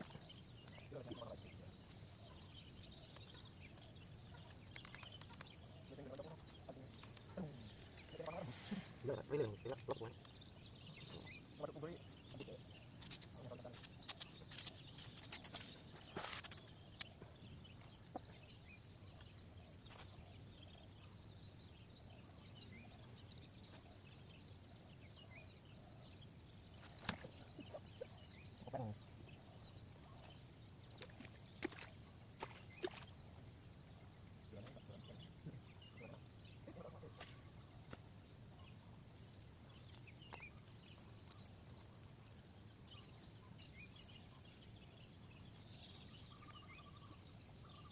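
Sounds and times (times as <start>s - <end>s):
small clicks and taps: 4.7s - 5.6s.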